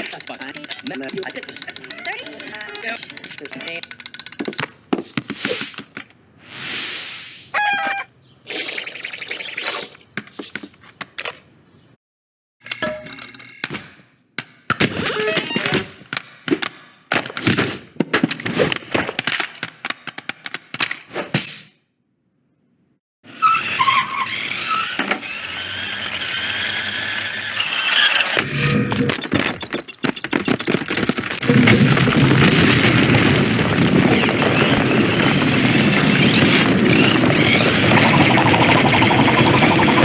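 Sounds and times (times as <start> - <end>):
noisy cartoon effect with squeals: 6.5 - 10.0, 23.3 - 40.0.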